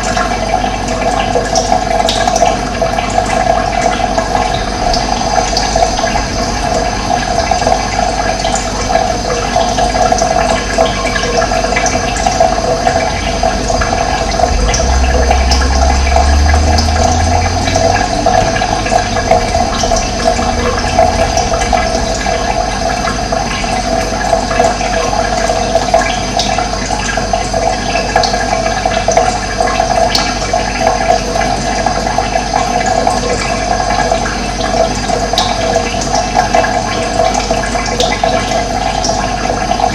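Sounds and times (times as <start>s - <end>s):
running water rushing: 0.0s - 39.9s
low rumble: 3.5s - 9.2s, 11.8s - 26.2s.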